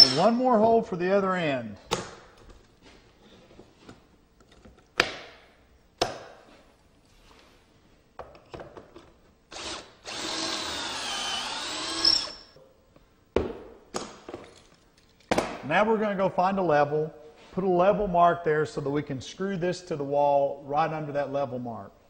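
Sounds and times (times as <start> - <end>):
power drill boring into wood: 0.0 - 0.3, 9.5 - 12.6.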